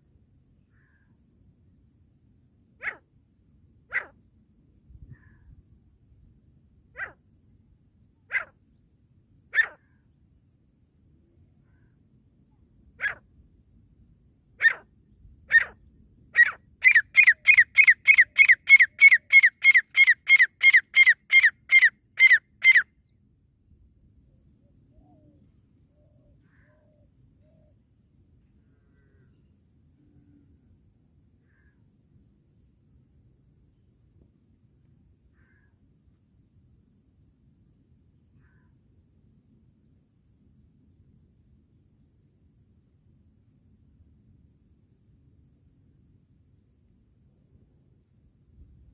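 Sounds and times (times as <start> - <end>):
francolin calling: 9.5 - 9.9, 16.4 - 23.1.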